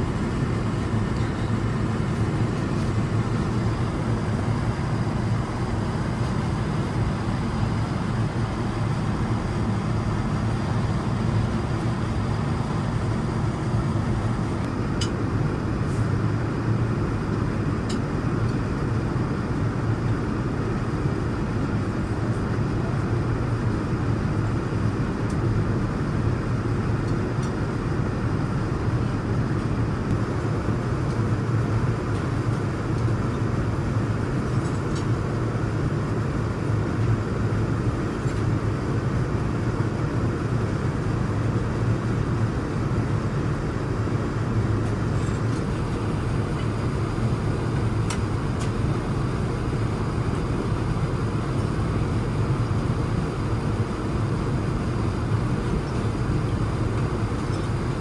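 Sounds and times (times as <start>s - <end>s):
airliner cabin noise: 0.0s - 58.0s.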